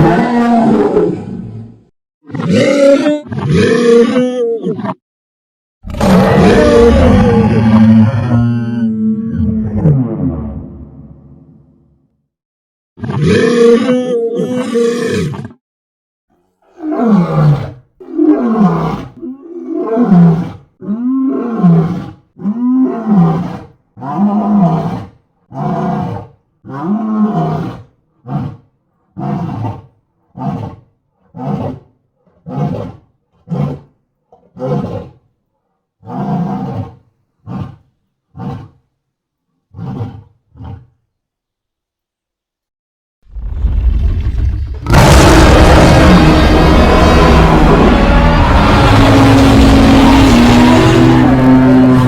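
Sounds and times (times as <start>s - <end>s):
dinosaur roars: 0.0s - 5.0s, 5.8s - 11.6s, 16.4s - 28.6s, 43.3s - 52.0s.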